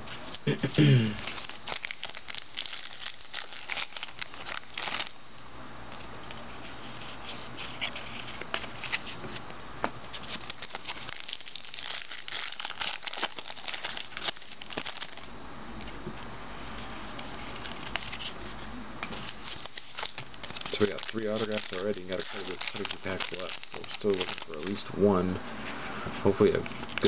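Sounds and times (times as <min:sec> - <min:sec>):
wrappers crinkling: 0:01.2 - 0:05.2, 0:10.1 - 0:15.3, 0:19.1 - 0:24.8, 0:26.5 - 0:27.0.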